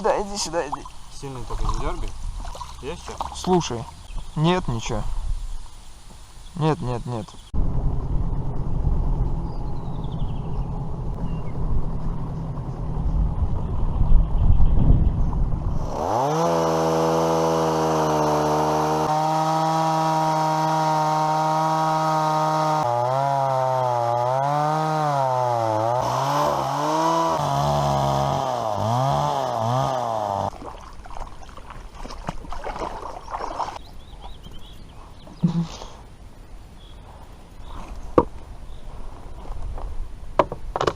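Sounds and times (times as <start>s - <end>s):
low rumbling noise: 7.5s - 16.1s.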